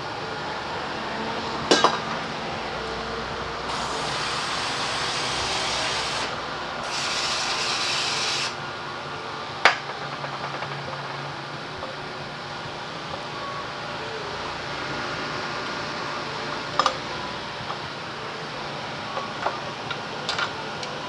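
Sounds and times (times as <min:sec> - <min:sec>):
aerosol can spraying: 0:03.7 - 0:08.6.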